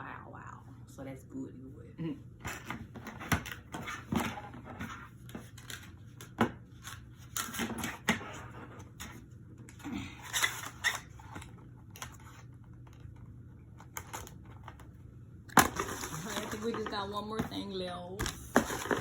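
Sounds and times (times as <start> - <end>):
packaging rustling: 15.6 - 17.0, 18.2 - 19.0.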